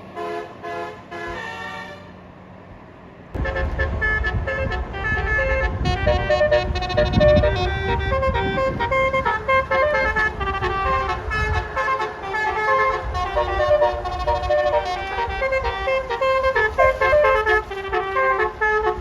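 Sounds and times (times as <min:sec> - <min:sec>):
multi-tone bus horn tune: 0:00.0 - 0:02.3, 0:03.4 - 0:19.0
low rumble: 0:03.3 - 0:11.8, 0:12.5 - 0:19.0.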